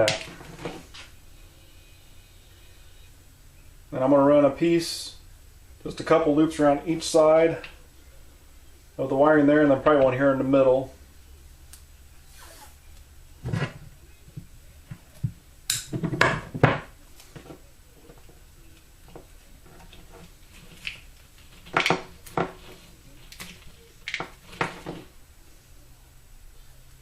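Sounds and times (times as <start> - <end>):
tape pulled off a roll: 12.3 - 12.8.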